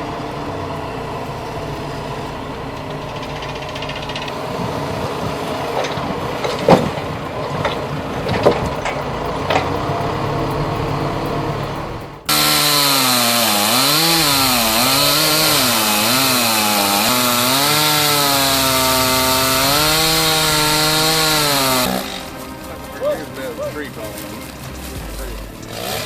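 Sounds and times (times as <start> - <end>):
chainsaw engine cutting: 0.0 - 26.0
mechanical noise with knocks: 2.8 - 12.3.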